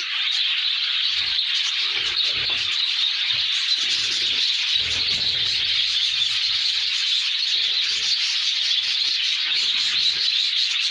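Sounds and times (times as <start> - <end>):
small birds twittering: 0.0 - 10.9.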